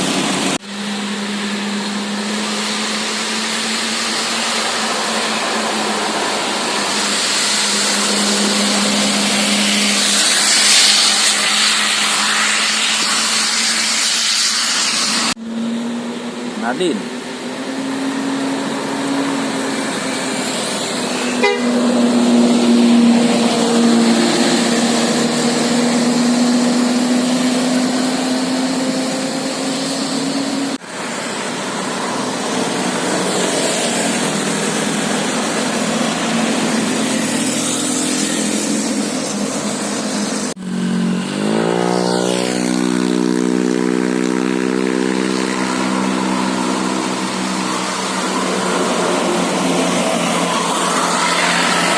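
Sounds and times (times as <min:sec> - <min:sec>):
musical air horn long notes: 0:21.1 - 0:28.1.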